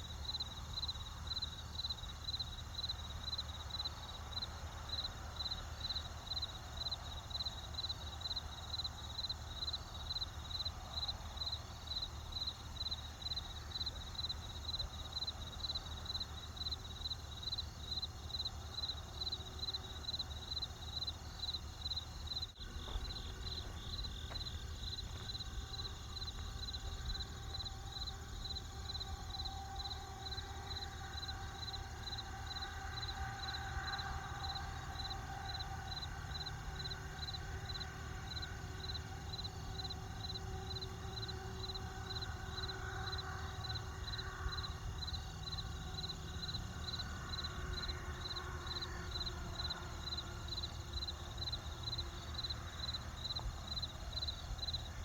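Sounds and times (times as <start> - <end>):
crickets chirping: 0.0 - 55.0
steady low rumble: 22.5 - 29.4.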